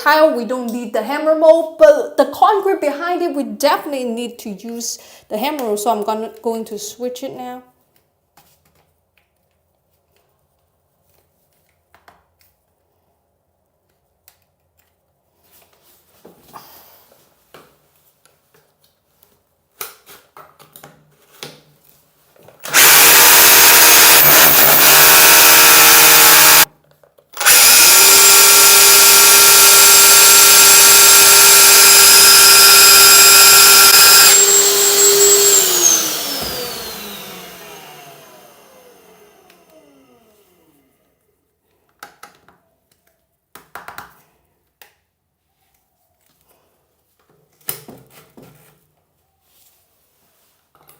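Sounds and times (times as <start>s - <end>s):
hammer drill drilling into wall: 22.6s - 26.7s, 27.4s - 40.1s.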